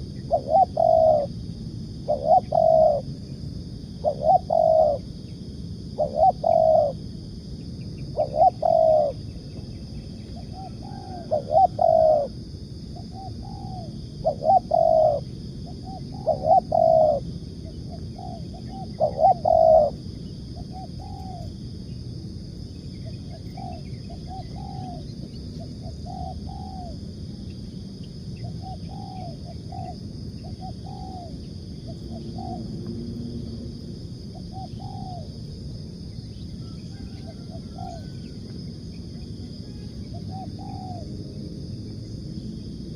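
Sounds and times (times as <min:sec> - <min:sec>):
dove cooing: 0:00.0 - 0:01.4, 0:02.0 - 0:03.1, 0:04.0 - 0:05.2, 0:05.9 - 0:07.0, 0:08.1 - 0:09.2, 0:10.4 - 0:12.4, 0:13.0 - 0:21.6, 0:23.0 - 0:27.0, 0:28.4 - 0:32.8, 0:34.3 - 0:35.4, 0:36.6 - 0:38.4, 0:39.6 - 0:41.0.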